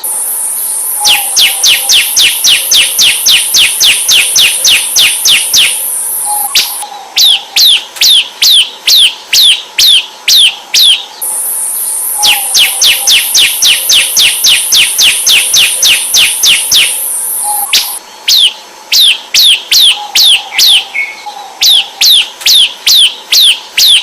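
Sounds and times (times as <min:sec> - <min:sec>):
steady high hiss: 0:00.0 - 0:06.8, 0:11.0 - 0:18.1
bird chirping: 0:00.0 - 0:24.0.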